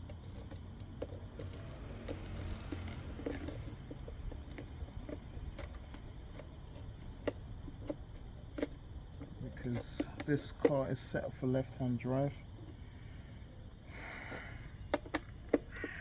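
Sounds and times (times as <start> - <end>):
clicks and rattles of tools: 0.0 - 11.8, 14.3 - 16.0.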